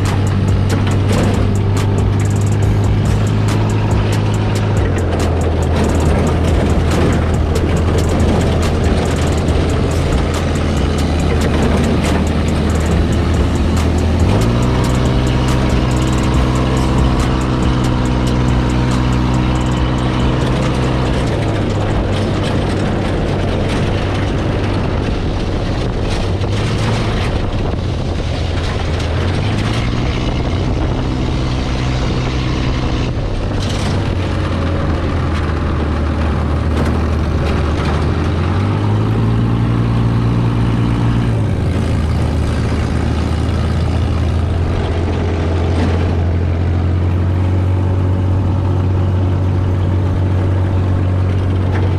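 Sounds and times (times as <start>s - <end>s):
scattered knocks: 0.0s - 27.5s
broad noise rush: 0.0s - 51.9s
buggy engine running: 0.0s - 51.9s.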